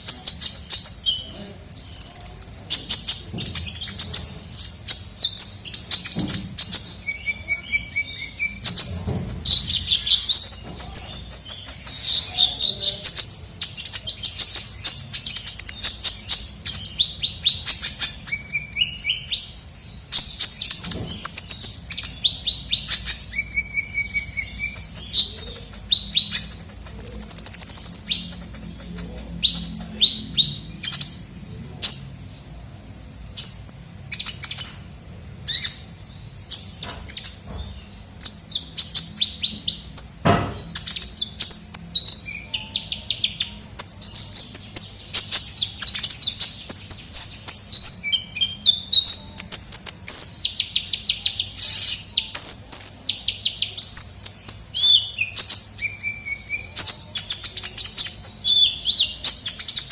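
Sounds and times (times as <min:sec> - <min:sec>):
bird chirping and trilling: 0:00.0 - 0:59.9.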